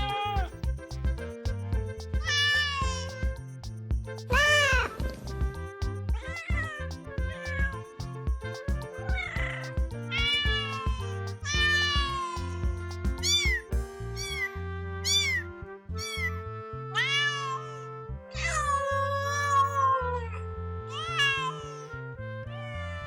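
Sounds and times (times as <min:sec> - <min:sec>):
background music with low chords: 0:00.0 - 0:23.0
kittens meowing: 0:09.1 - 0:12.6.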